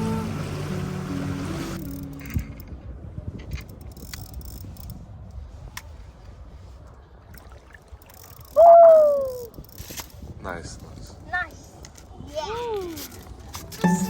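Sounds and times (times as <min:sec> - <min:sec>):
water lapping and dribbling: 0:06.8 - 0:08.6.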